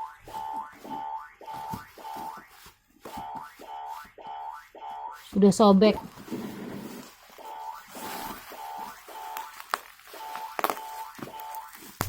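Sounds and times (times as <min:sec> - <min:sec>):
plastic packaging rustling: 0:00.0 - 0:03.2, 0:06.0 - 0:12.0.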